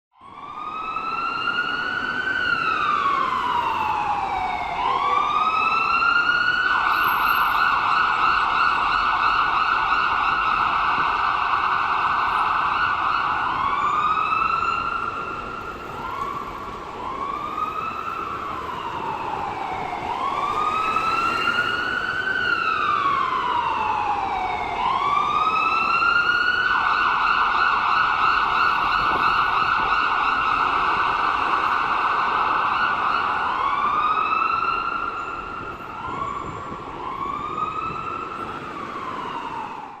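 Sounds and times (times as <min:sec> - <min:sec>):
ambulance siren: 0:00.1 - 0:40.0.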